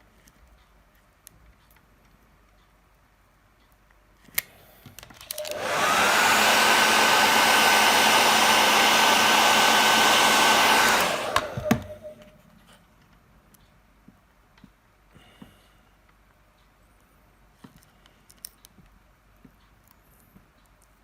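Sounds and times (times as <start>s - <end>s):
hot-air blower running: 5.3s - 12.3s.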